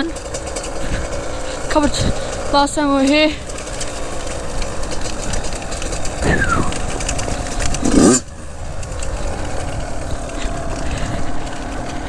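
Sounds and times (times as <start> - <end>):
dirt bike engine revving: 0.0 - 12.0.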